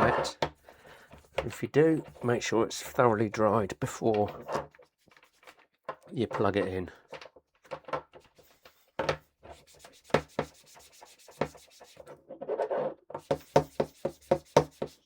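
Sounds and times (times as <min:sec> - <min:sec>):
cleaning wipe scrubbing: 0:09.5 - 0:12.1, 0:13.2 - 0:15.0.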